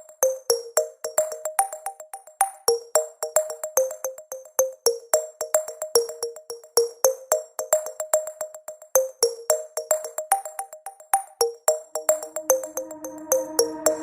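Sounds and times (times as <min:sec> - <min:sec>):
light electronic tune: 0:12.0 - 0:14.0.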